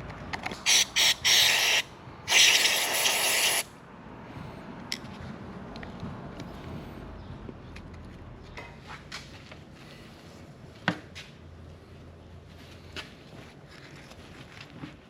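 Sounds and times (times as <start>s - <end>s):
aerosol spray hissing: 0.7s - 3.7s.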